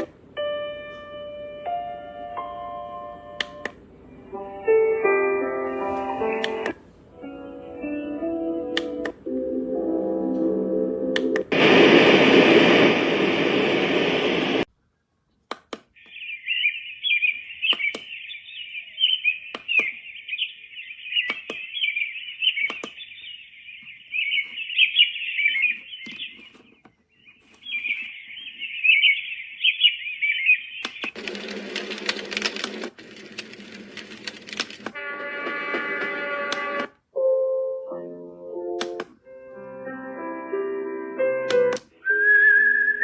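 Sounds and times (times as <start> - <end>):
low rushing noise: 11.5 - 14.7
sharp clicks: 17.6 - 18.2, 19.5 - 20.0, 21.2 - 21.8, 22.6 - 23.1, 30.8 - 37.0, 38.8 - 39.2.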